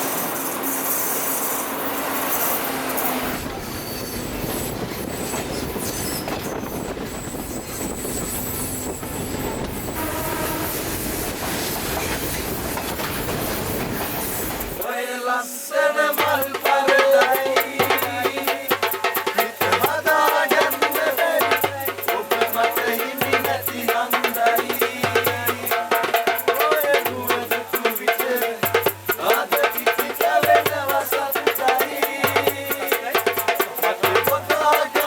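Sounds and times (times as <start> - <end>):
rattling shaker percussion: 0.0 - 3.5, 15.9 - 35.0.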